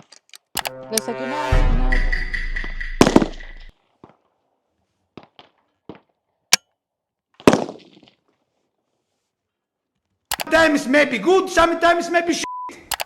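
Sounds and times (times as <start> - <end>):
gunshot with echo: 2.9 - 3.7
sharp crack: 3.0 - 3.7.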